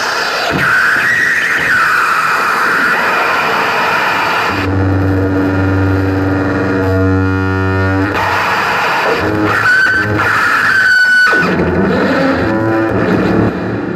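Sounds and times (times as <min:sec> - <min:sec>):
buzzing drone: 0:00.0 - 0:13.9
dense noisy texture: 0:00.0 - 0:13.9
high held whistle: 0:08.2 - 0:11.5.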